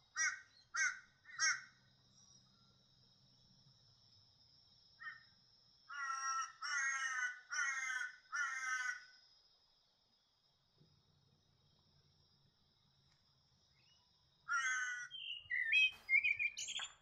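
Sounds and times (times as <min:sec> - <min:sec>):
bird giving harsh crow-like calls: 0:00.1 - 0:01.7, 0:05.9 - 0:09.1, 0:14.5 - 0:16.8.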